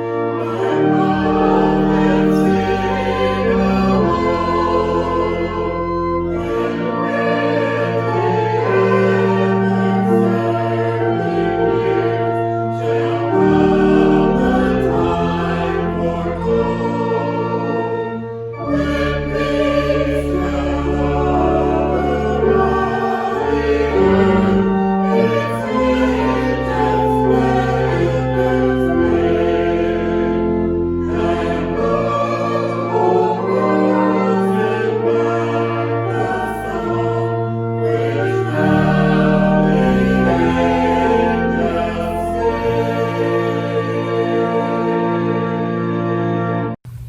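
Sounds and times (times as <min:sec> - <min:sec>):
choir singing held chords: 0:00.0 - 0:46.8.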